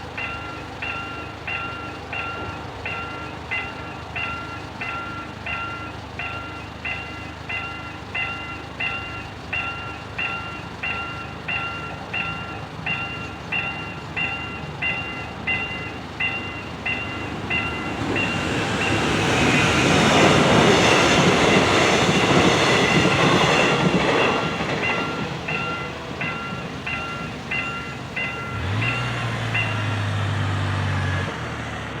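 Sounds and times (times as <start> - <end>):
passenger train passing: 0.0 - 32.0
level crossing bell ringing: 24.8 - 29.8.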